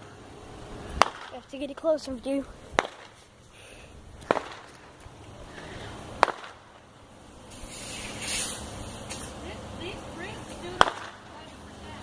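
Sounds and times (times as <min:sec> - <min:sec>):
firework bangs: 0:00.9 - 0:01.6, 0:02.7 - 0:03.3, 0:04.1 - 0:05.1, 0:05.9 - 0:09.5, 0:10.2 - 0:11.5
firework hiss: 0:02.7 - 0:09.6.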